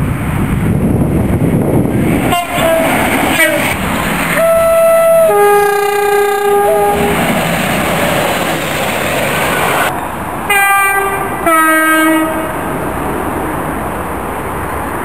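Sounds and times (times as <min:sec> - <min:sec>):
moving train rumble: 0:00.0 - 0:15.0
train two-tone horn: 0:02.3 - 0:07.3, 0:10.5 - 0:12.6.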